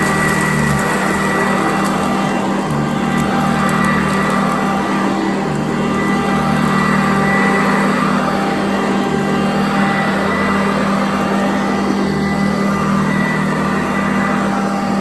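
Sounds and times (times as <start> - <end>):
vacuum cleaner running: 0.0 - 15.0.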